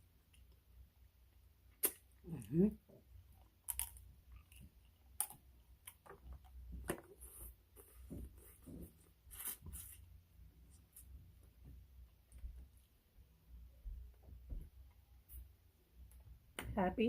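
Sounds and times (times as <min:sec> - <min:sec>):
soft chewing: 0:00.1 - 0:13.0.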